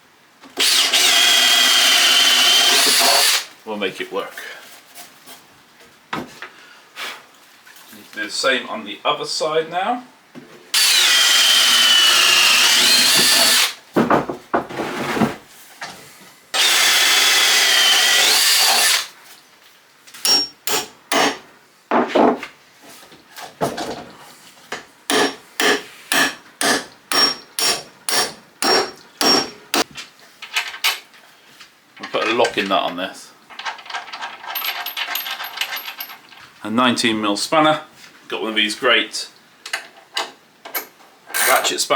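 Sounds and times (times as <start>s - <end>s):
power drill boring through timber: 0.6s - 3.5s, 10.8s - 13.8s, 16.6s - 19.1s.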